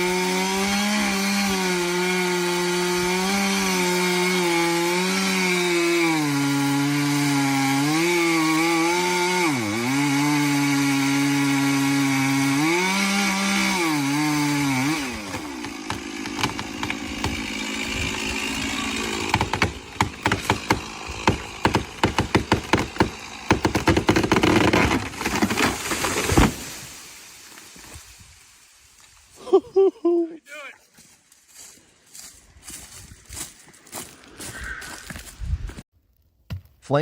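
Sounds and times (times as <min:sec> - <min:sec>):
chainsaw cutting wood: 0:00.0 - 0:28.1
sharp knocks and crackles: 0:15.3 - 0:26.7.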